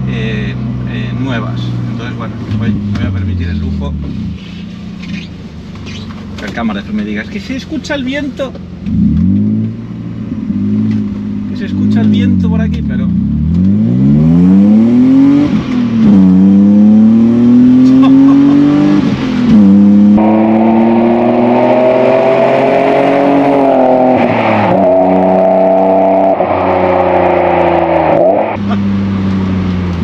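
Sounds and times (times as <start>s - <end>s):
car engine accelerating hard: 8.4s - 30.0s.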